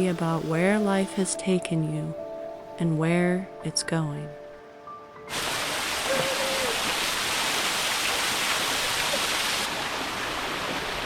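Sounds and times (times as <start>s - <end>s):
flowing water rushing: 5.3s - 11.0s.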